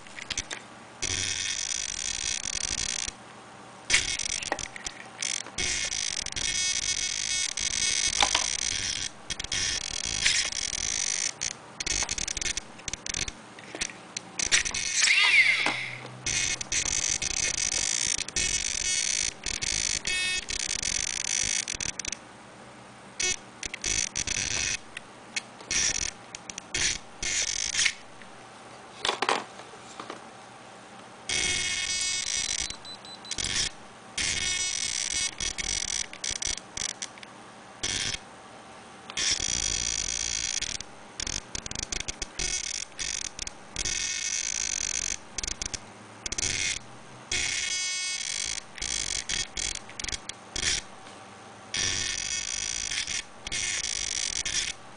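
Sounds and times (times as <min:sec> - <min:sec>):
servo high-pitched whine: 0:03.9 - 0:22.2.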